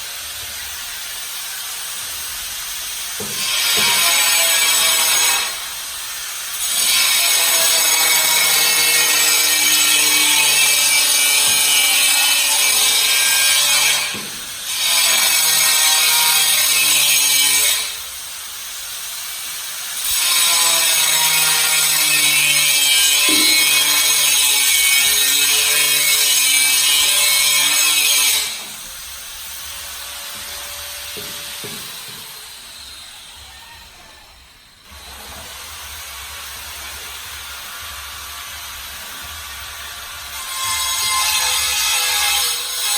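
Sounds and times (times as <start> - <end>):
power tool hissing and humming: 0.0 - 33.5, 34.4 - 42.9
background noise: 0.0 - 42.9
electric power saw cutting: 20.1 - 28.8.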